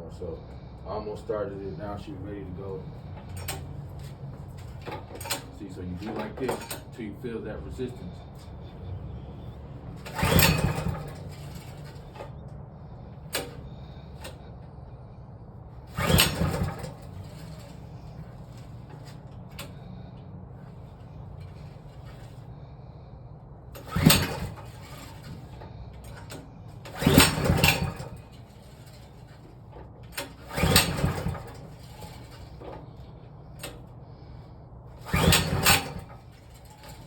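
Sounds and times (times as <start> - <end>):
generator pull-starter whirring rattle: 0.0 - 37.0.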